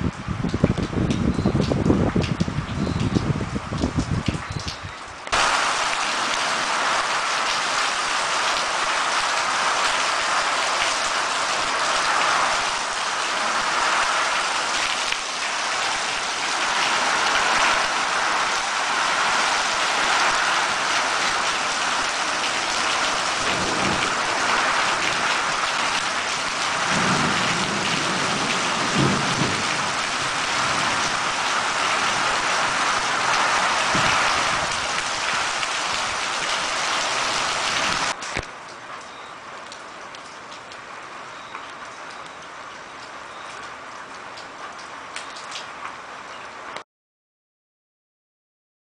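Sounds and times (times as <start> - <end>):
heavy rain: 0.0 - 46.8
thunder rumbling: 15.5 - 36.4.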